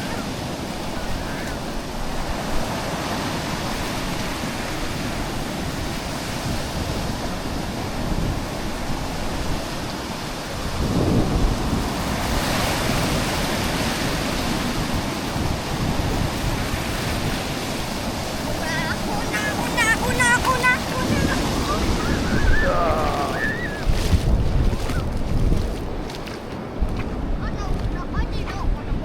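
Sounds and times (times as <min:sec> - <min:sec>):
sea waves: 0:00.0 - 0:29.0
wind buffeting microphone: 0:00.0 - 0:29.0.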